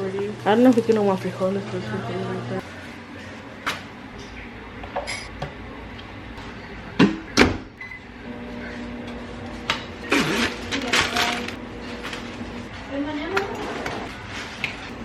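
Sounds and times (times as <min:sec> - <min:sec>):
kitchen appliance motor hum: 0:08.1 - 0:15.0.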